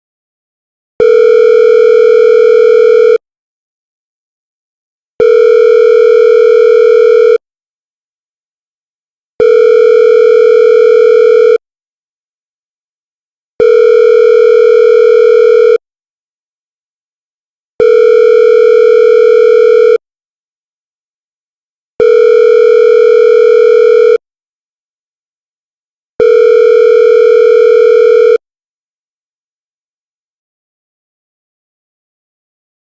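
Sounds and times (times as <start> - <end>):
telephone ringback tone: 1.0 - 3.2, 5.2 - 7.4, 9.4 - 11.6, 13.6 - 15.8, 17.8 - 20.0, 22.0 - 24.2, 26.2 - 28.4.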